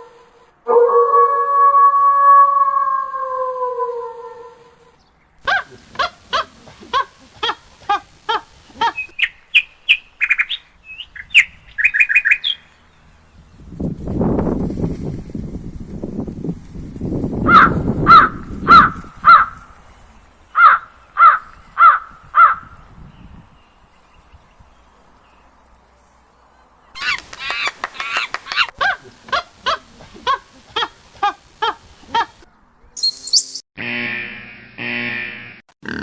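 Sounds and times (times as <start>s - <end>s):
animal calls through loudspeaker: 17.5s - 19.6s.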